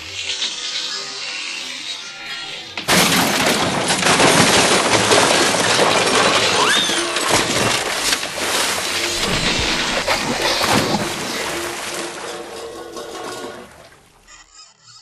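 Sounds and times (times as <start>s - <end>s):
cartoon crash clatter: 2.3s - 14.6s.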